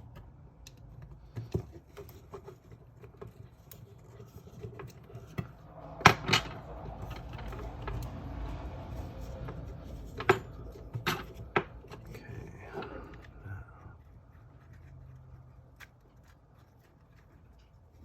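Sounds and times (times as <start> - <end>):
small clicks and taps: 0.0 - 5.5.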